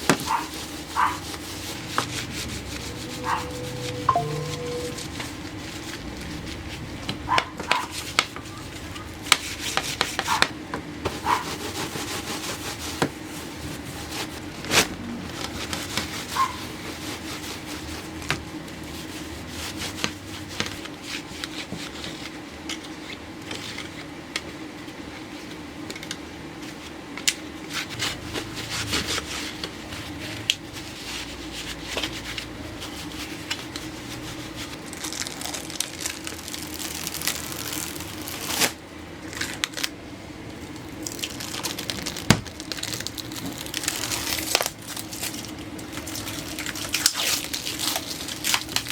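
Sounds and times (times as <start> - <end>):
objects rubbing and scraping: 0.0 - 10.5
steady low hum: 0.0 - 11.0.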